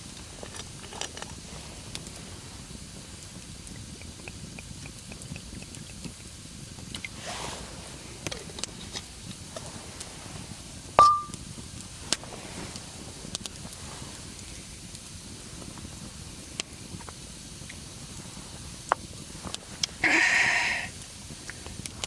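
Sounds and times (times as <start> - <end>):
campfire crackling: 0.0 - 22.0
metallic clink: 11.0 - 11.4.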